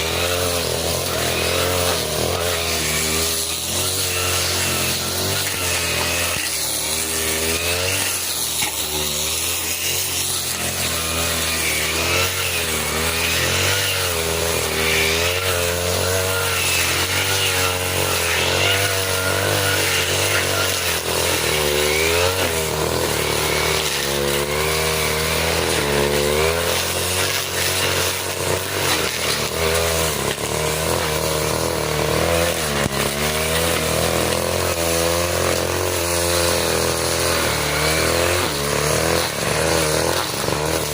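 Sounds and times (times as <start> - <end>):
brush cutter engine cutting grass: 0.0 - 40.9.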